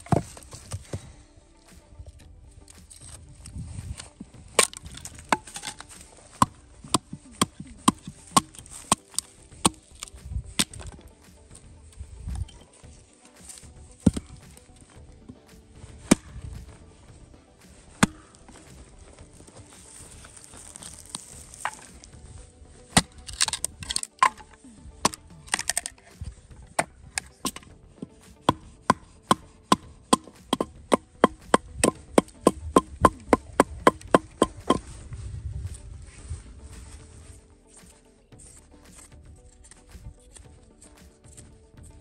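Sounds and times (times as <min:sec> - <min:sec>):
axe chopping wood: 0:00.0 - 0:01.1, 0:04.5 - 0:11.5, 0:13.4 - 0:16.9, 0:17.6 - 0:19.0, 0:20.7 - 0:22.2, 0:22.8 - 0:34.9.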